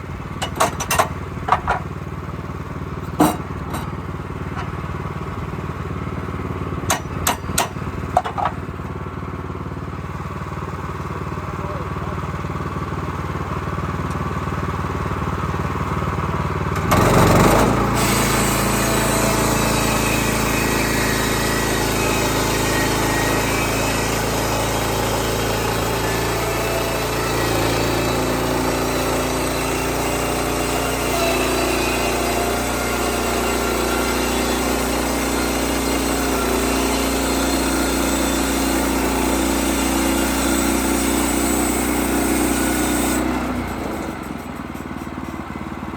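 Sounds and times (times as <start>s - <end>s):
small gas engine running: 0.0s - 45.9s.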